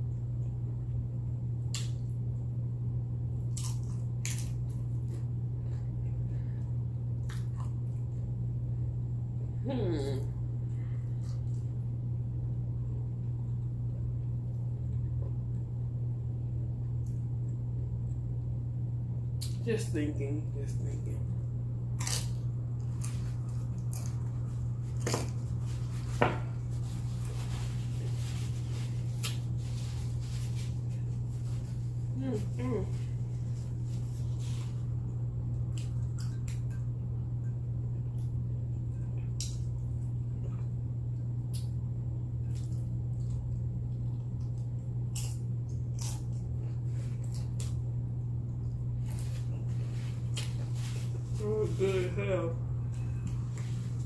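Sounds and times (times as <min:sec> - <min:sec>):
steady low hum: 0:00.0 - 0:54.0
chewing nachos: 0:03.3 - 0:08.5, 0:21.9 - 0:51.4.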